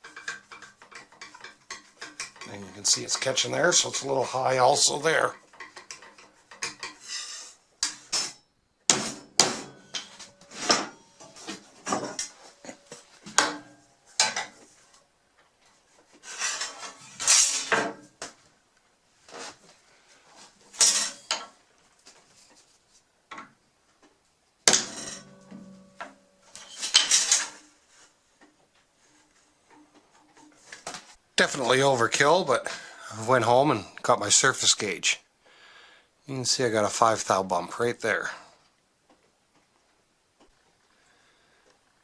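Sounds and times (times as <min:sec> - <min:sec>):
metal tools clanking on metal: 0:09.5 - 0:14.6, 0:16.3 - 0:18.0, 0:20.7 - 0:21.6, 0:24.7 - 0:27.6.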